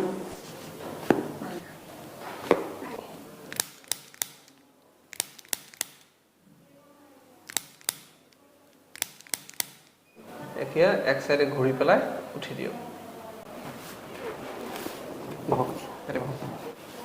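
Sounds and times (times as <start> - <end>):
spine clicks and pops: 3.5 - 6.1, 7.5 - 10.0.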